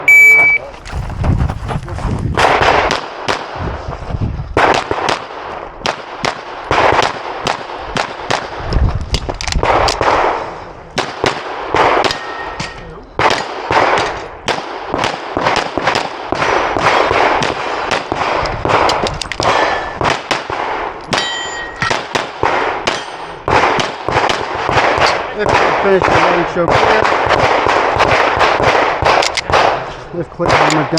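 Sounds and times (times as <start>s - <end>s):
pistol gunshots: 2.4s - 3.6s, 4.6s - 8.6s, 9.2s - 30.9s
metal target clanging: 12.0s - 13.0s, 21.1s - 22.0s, 22.9s - 23.4s.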